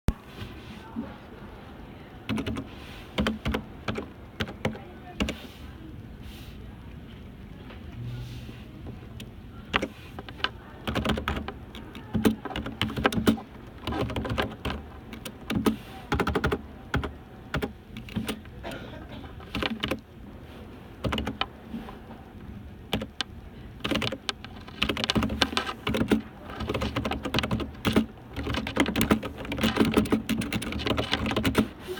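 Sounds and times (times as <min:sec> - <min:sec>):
typing on a keyboard: 0:02.3 - 0:05.4, 0:09.7 - 0:18.7, 0:19.3 - 0:20.1, 0:21.0 - 0:21.6, 0:22.9 - 0:31.9.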